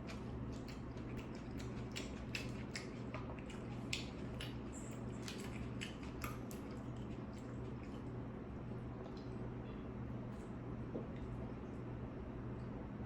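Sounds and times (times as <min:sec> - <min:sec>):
close-miked chewing crunches: 0:00.0 - 0:08.3
steady low hum: 0:00.0 - 0:13.0.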